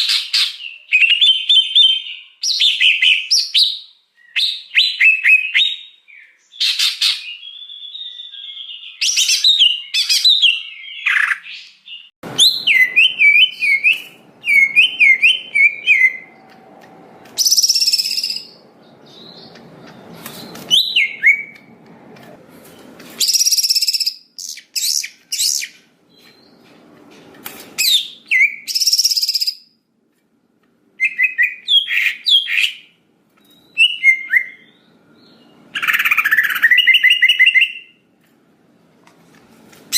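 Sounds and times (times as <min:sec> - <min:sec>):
bird singing whistled phrases: 0:00.3 - 0:16.4, 0:17.4 - 0:19.5, 0:20.4 - 0:21.6, 0:23.2 - 0:25.8, 0:27.8 - 0:29.7, 0:31.0 - 0:38.0.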